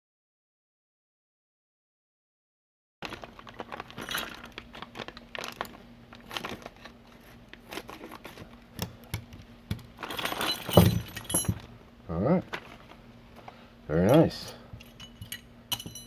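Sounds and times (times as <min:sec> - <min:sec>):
packaging crinkling and tearing: 0:03.0 - 0:08.6.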